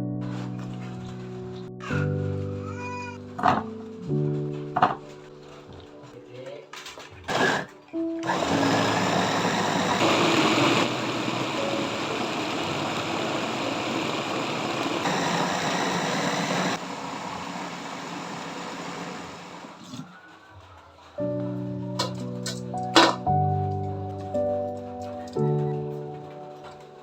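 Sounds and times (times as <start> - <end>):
motor running: 7.3 - 19.8.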